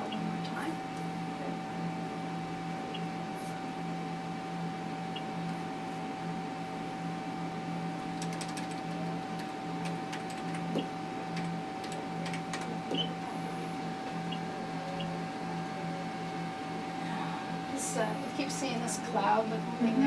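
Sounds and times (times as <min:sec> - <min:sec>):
machine whine: 0:00.0 - 0:20.0
pulsing low hum: 0:00.0 - 0:20.0
console keys clicking: 0:08.2 - 0:10.8, 0:11.4 - 0:12.7.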